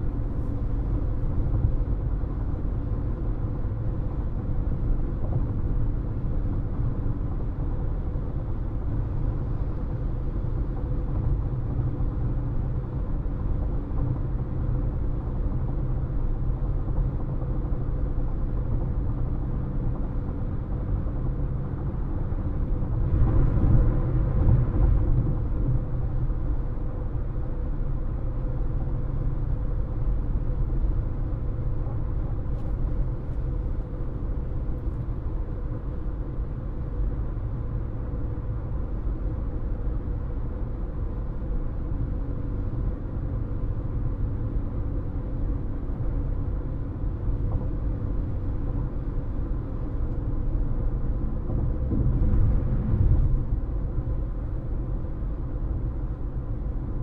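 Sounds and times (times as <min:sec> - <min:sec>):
tyre and road noise: 0:50.6 - 0:56.1.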